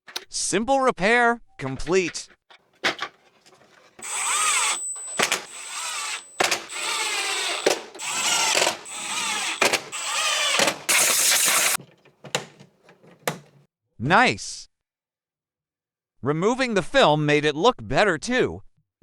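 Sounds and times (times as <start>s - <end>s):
power drill bursts: 3.4s - 11.9s.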